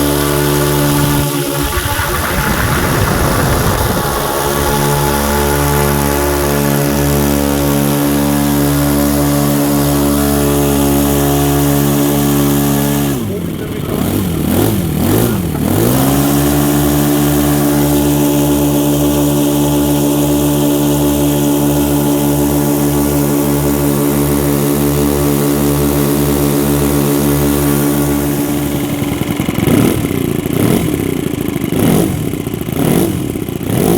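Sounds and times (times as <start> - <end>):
model aircraft engines running: 0.0 - 33.9.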